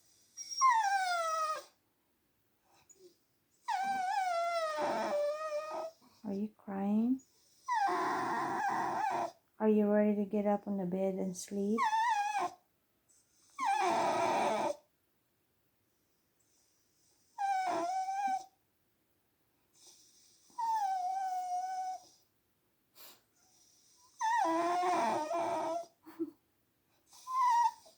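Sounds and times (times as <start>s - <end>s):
dog whining: 0.2s - 1.8s, 2.8s - 6.2s, 7.6s - 9.4s, 11.8s - 12.6s, 13.4s - 14.8s, 17.4s - 18.5s, 20.5s - 22.2s, 24.1s - 26.3s, 27.1s - 27.9s.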